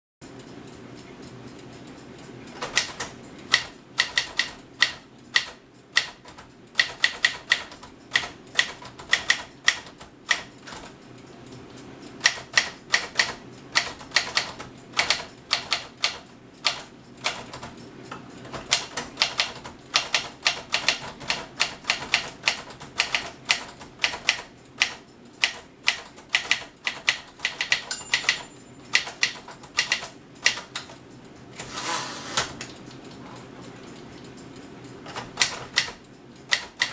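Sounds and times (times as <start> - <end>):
manual typewriter typing: 2.5 - 11.0, 12.2 - 17.8, 18.4 - 31.0, 35.0 - 36.9.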